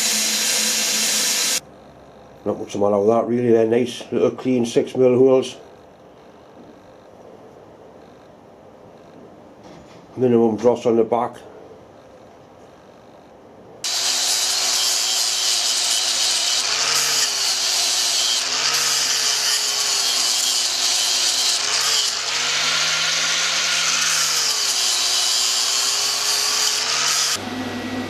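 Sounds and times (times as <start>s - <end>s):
power tool running on metal: 0.0s - 1.6s, 13.8s - 28.0s.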